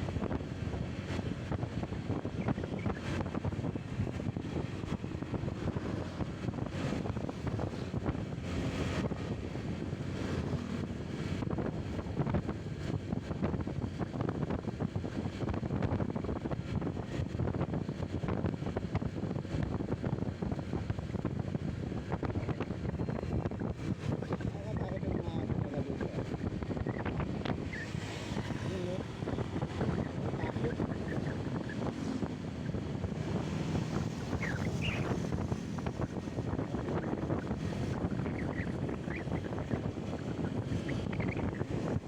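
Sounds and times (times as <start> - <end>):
road noise: 0.0 - 42.0
wind buffeting microphone: 0.0 - 42.0
motorcycle engine: 26.2 - 42.0.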